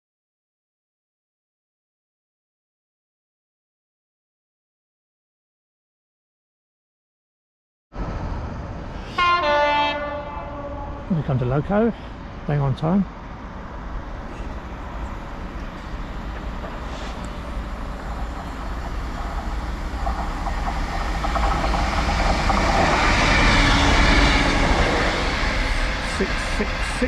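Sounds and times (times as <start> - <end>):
freight train passing: 8.0 - 27.0.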